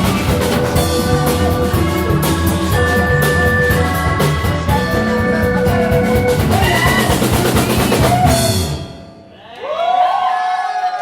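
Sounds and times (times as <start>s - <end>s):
ensemble playing loud music: 0.0s - 9.1s
driving drum kit: 0.0s - 9.5s
people whooping and cheering: 5.7s - 8.7s, 9.4s - 11.0s.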